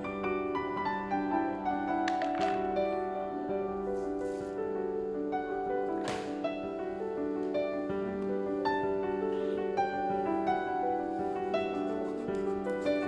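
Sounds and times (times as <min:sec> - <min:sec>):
slow gentle keyboard music: 0:00.0 - 0:13.0.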